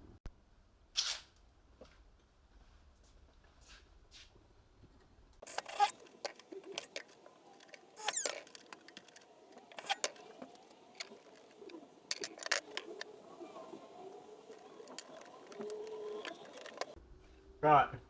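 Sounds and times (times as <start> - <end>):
scraping rasp: 5.4 - 17.0
tools and parts clicking: 5.4 - 17.0.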